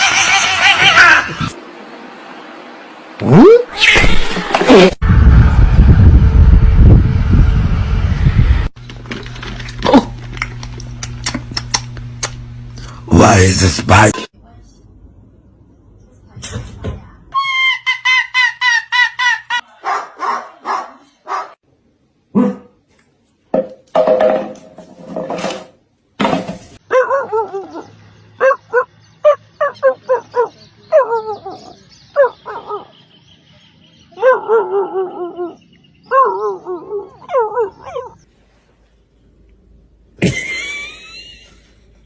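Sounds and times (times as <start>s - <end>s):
dog barking and yelping: 19.6s - 21.6s, 26.8s - 33.0s, 34.2s - 38.2s.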